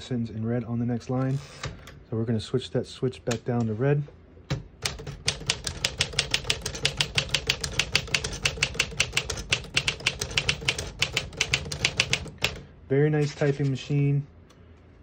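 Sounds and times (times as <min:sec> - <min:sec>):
typewriter typing: 0:04.8 - 0:12.6.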